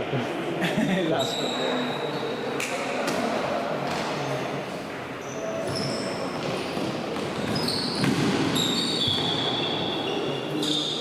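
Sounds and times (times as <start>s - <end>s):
sneaker squeaks on floor: 1.2s - 2.4s, 5.2s - 11.0s.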